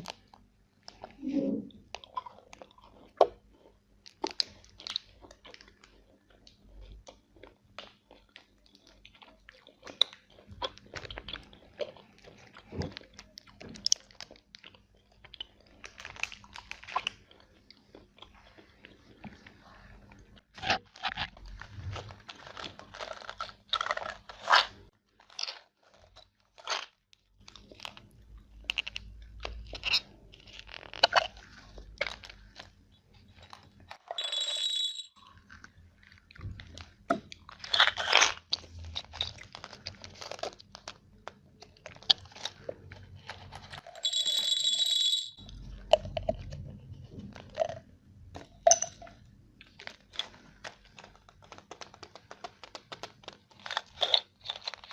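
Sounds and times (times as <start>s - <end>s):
chocolate crunching: 1.8s - 54.9s
high-pitched tone: 34.2s - 35.2s, 44.0s - 45.4s.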